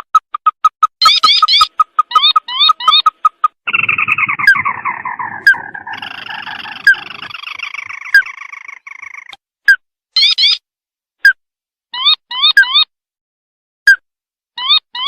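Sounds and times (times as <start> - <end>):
bird pulsed trill: 1.0 - 9.3
short rising chirps: 3.7 - 9.3.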